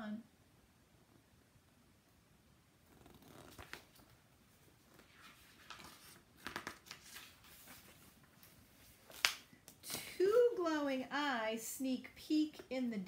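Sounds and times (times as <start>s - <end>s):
paper pages rustling: 3.2s - 9.8s.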